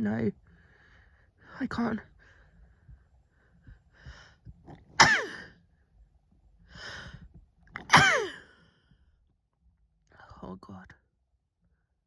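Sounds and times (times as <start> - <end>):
breathy in-breath: 2.2 - 4.5, 6.7 - 7.3, 8.1 - 9.0
woman sneezing: 5.0 - 5.4, 7.9 - 8.4.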